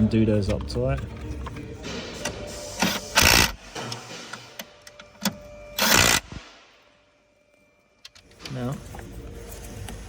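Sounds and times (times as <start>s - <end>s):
power tool tightening bolts: 2.8s - 3.6s, 5.8s - 6.4s.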